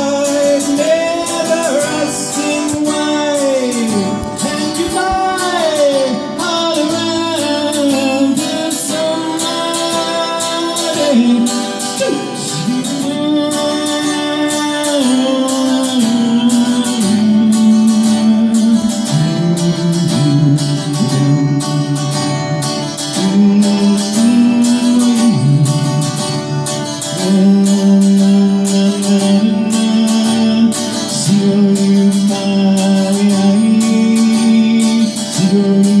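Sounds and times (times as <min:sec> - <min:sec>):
acoustic guitar strumming: 0:00.0 - 0:36.0.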